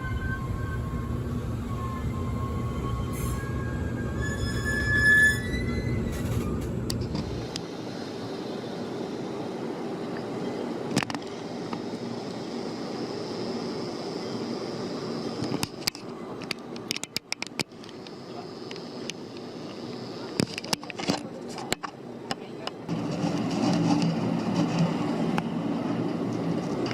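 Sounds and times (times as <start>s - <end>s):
train brake squeal: 0.0s - 6.7s
hum of standing trains: 0.0s - 26.9s
train rumble: 0.0s - 26.9s.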